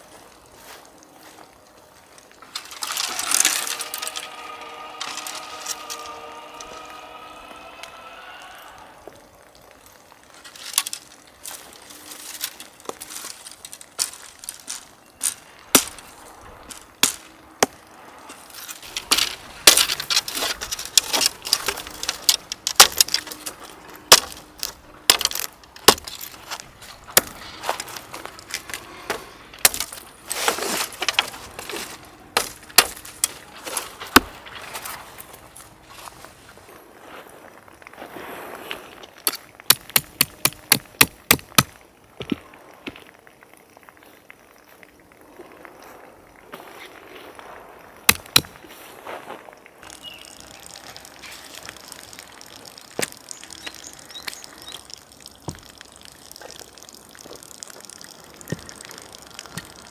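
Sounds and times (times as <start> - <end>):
hard objects clinking and knocking: 18.8 - 34.3.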